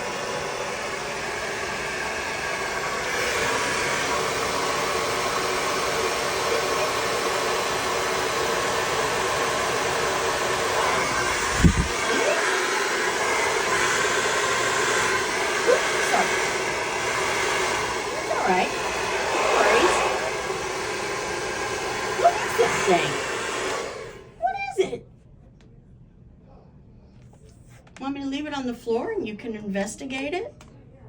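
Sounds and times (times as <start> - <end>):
blow dryer whirring: 0.0 - 24.6.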